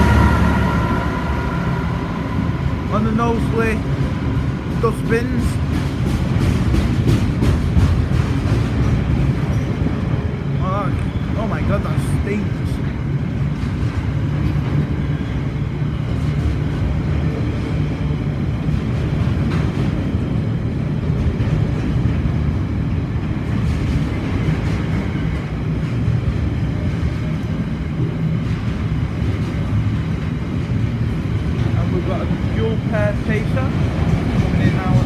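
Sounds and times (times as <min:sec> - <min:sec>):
locomotive diesel engine drone: 0:00.0 - 0:06.5.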